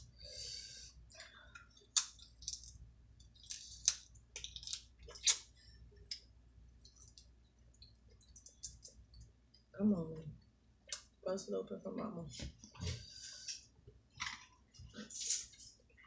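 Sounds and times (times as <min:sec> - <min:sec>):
crab shells cracking: 0:01.6 - 0:05.5.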